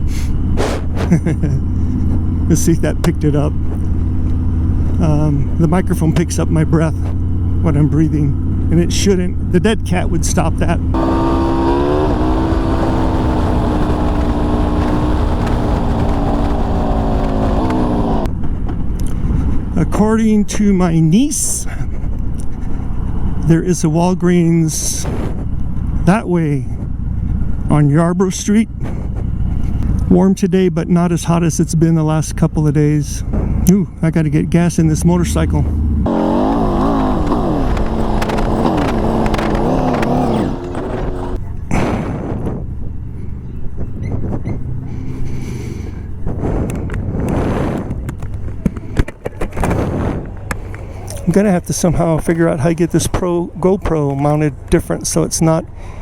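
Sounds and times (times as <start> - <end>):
motorcycle engine cruising: 0.0 - 20.0, 33.3 - 41.7
wind rumbling on microphone: 10.9 - 20.0, 33.2 - 33.7, 34.8 - 55.0.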